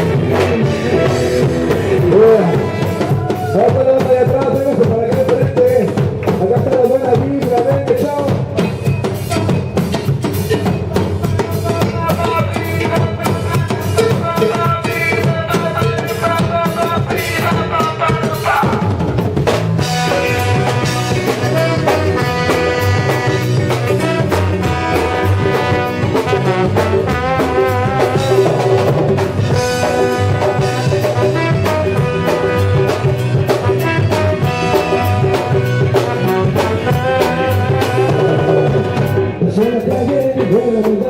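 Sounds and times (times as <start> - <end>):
brass section melody: 0.0 - 5.2, 9.2 - 18.8, 19.5 - 40.2
drum kit and bass: 0.0 - 41.0.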